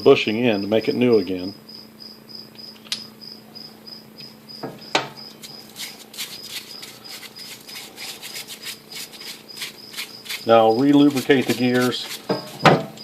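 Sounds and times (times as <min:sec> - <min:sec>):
faint low hum: 0:00.0 - 0:13.0
cricket chirping: 0:00.3 - 0:13.0
scratchy rubbing strokes: 0:05.4 - 0:12.8.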